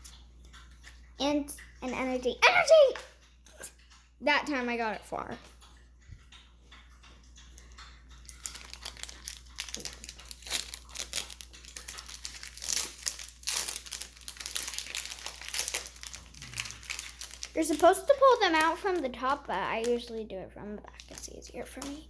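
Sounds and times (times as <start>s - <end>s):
foil wrapper crinkling: 8.2s - 20.2s, 20.9s - 22.0s.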